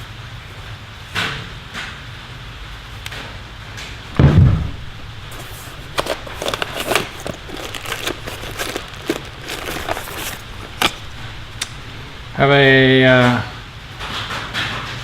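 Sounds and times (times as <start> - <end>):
hand tools clicking and clattering: 5.2 - 12.4.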